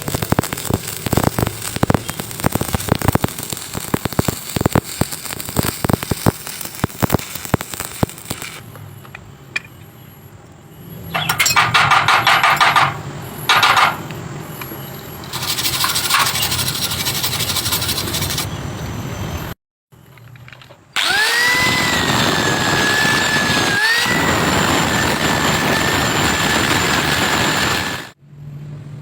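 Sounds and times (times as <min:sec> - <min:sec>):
harsh metalworking noise: 0:00.0 - 0:08.7, 0:11.2 - 0:14.2, 0:15.2 - 0:18.5, 0:21.0 - 0:28.2
arc welding crackling: 0:00.0 - 0:08.8, 0:15.2 - 0:18.5, 0:21.0 - 0:28.2.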